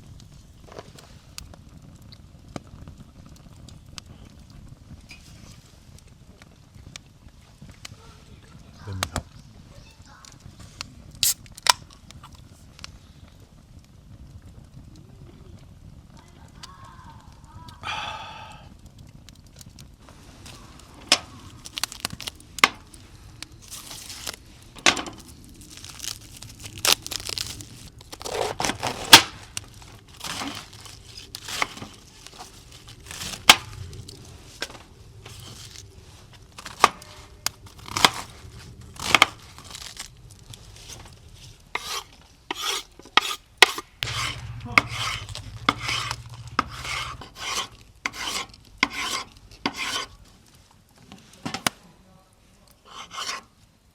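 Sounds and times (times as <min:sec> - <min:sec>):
scraping and rubbing: 0:23.6 - 0:51.5, 0:52.8 - 0:53.5.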